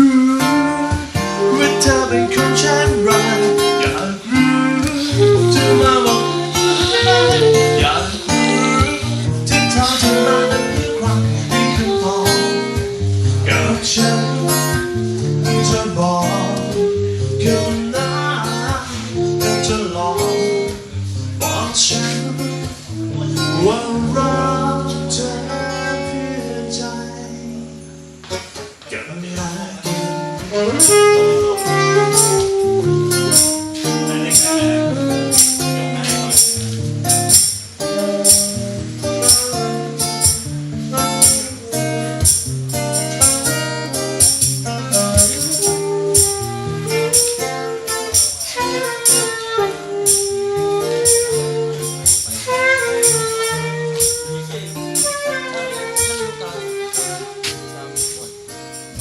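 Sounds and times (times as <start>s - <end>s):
live band playing pop: 0.0s - 28.8s, 29.4s - 59.0s
tambourine jingling: 30.7s - 59.0s.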